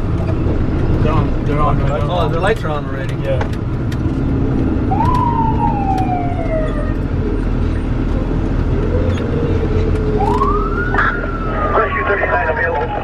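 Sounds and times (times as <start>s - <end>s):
truck rumble: 0.0s - 13.0s
lower siren tone: 4.8s - 7.3s, 10.1s - 13.0s
siren wail: 4.8s - 7.3s, 8.8s - 13.0s.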